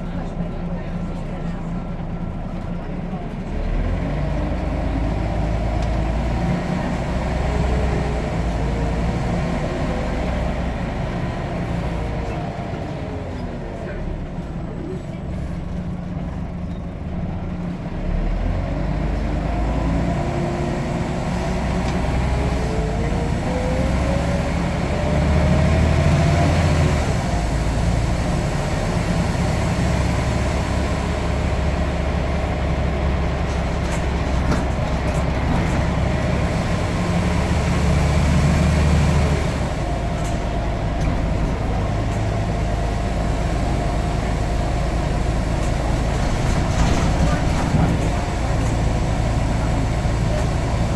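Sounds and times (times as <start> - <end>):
bus engine rumbling: 0.0 - 50.9
bus engine whine: 0.0 - 50.9.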